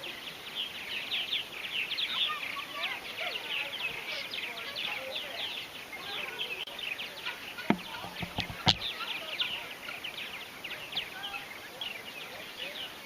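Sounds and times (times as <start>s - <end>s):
sharp knocks: 7.7s - 8.8s.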